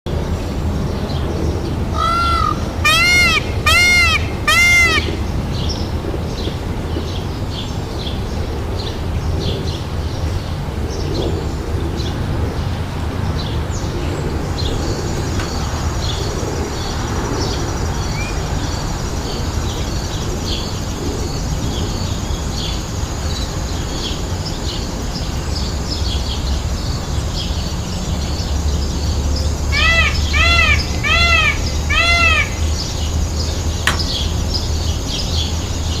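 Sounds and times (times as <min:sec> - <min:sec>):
peacock calls: 0:01.9 - 0:05.5, 0:29.7 - 0:33.2
small birds chirping: 0:27.3 - 0:36.0.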